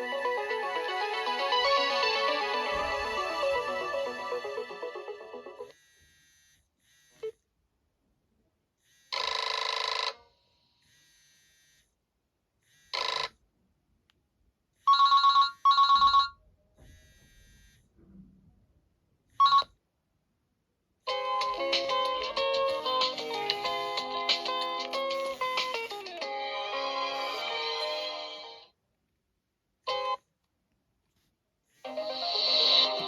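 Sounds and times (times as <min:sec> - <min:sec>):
phone ringtones and alert tones: 0:00.0 - 0:05.7, 0:14.9 - 0:16.4, 0:19.4 - 0:19.7, 0:21.1 - 0:28.6, 0:31.8 - 0:33.0
old telephone double ring: 0:09.2 - 0:10.2, 0:14.9 - 0:16.4
short buzzy phone tones: 0:14.9 - 0:17.9, 0:23.2 - 0:26.0, 0:27.1 - 0:28.4, 0:31.8 - 0:33.0.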